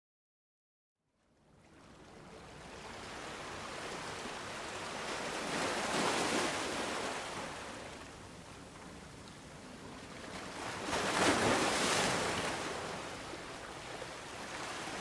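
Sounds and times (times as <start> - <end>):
small ocean waves washing in: 10.3 - 15.0.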